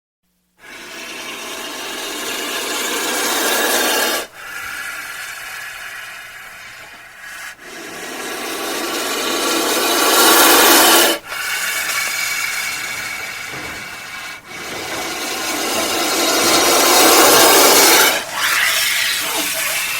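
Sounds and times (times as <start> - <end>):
cobra hissing: 0.6 - 19.9.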